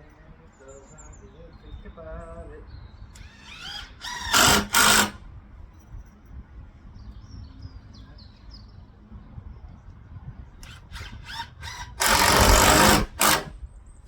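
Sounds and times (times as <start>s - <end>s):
power tool whirring bursts: 3.2s - 5.2s, 10.6s - 13.6s.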